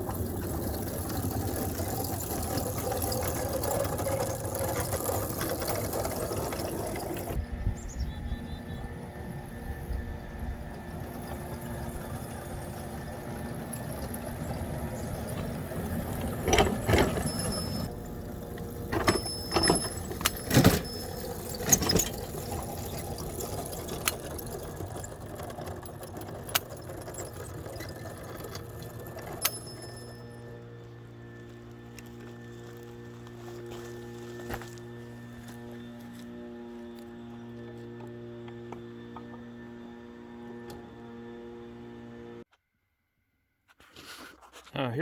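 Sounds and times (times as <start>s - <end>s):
metal tools clanking and knocking: 11.2s - 30.5s.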